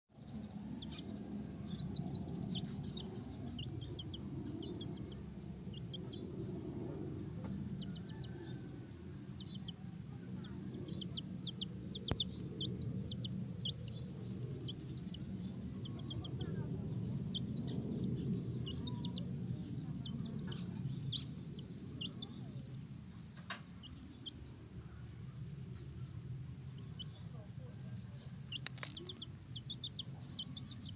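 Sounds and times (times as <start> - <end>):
steady low hum: 0.2 - 30.9
chickens clucking: 10.4 - 14.0, 28.4 - 30.9.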